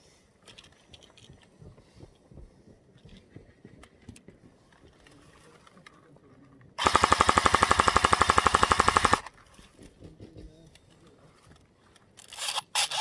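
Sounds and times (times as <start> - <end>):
airsoft gun full-auto burst: 6.8 - 9.3.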